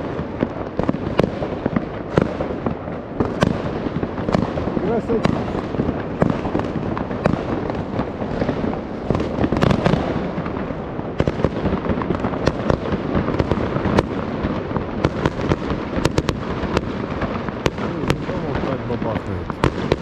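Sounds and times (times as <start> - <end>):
fireworks rumble and crackle: 0.0 - 20.0
sharp firework bangs: 0.0 - 20.0.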